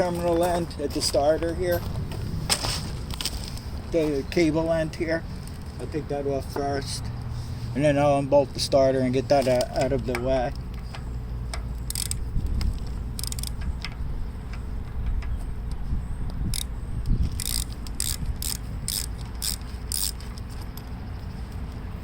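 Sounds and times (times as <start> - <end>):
ratchet wrench clicking: 9.8 - 15.3, 16.5 - 16.7, 17.3 - 20.9.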